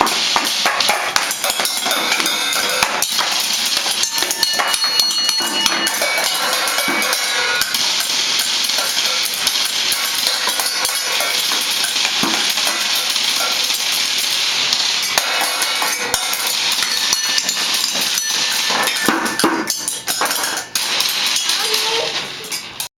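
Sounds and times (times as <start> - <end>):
noisemakers clattering and rattling: 0.0 - 22.9.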